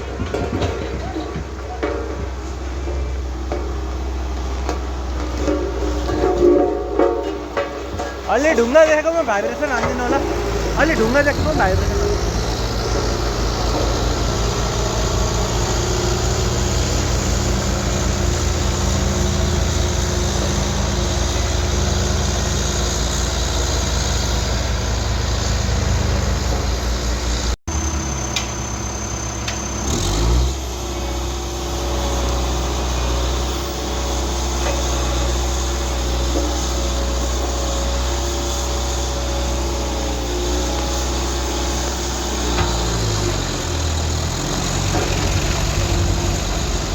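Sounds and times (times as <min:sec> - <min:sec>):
road roller diesel engine: 0:00.0 - 0:46.9
low vibration pulsing: 0:02.6 - 0:28.2.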